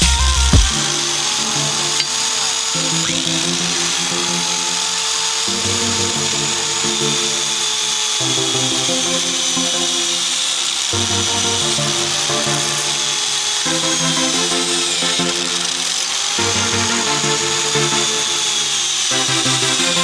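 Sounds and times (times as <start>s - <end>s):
background music with bass: 0.0s - 2.1s
electric drill whining: 0.0s - 20.0s.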